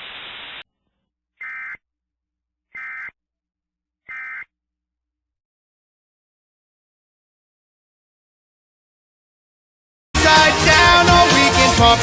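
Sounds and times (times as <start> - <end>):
static hiss: 0.0 - 0.6
buzzy digital data tone bursts: 1.4 - 1.8, 2.8 - 3.1, 4.1 - 4.4.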